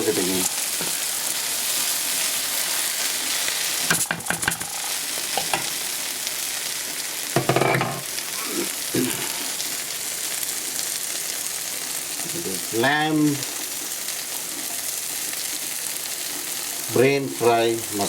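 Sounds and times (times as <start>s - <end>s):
food sizzling in a pan: 0.0s - 18.0s.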